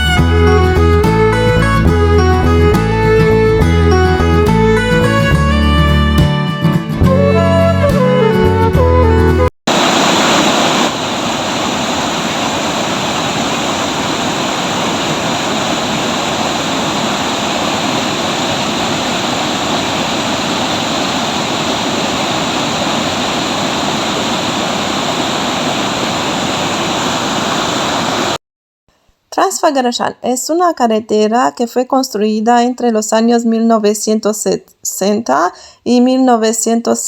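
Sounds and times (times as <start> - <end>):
waterfall rushing: 9.7 - 28.4.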